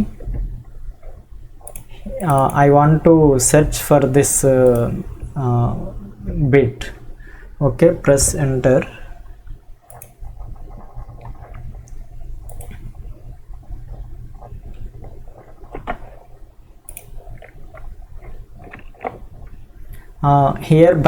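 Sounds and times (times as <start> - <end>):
low background hum: 0.0 - 21.0
faint clicks: 1.0 - 2.6, 9.9 - 13.0, 16.8 - 17.2.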